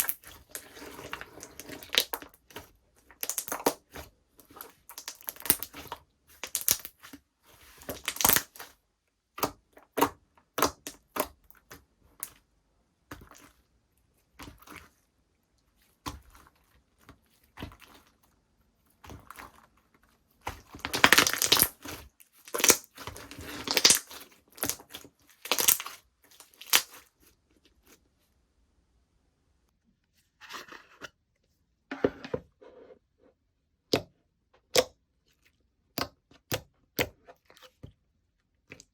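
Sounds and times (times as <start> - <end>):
slime squishing by hand: 0.0 - 28.2.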